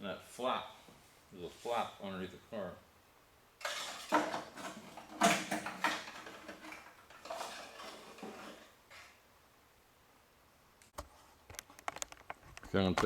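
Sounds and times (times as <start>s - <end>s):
parts scraping and clattering: 3.6s - 9.2s.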